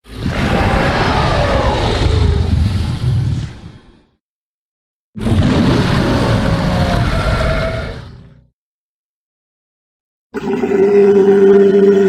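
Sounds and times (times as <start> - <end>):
loud rumbling sound effect: 0.0 - 4.1, 5.2 - 8.0.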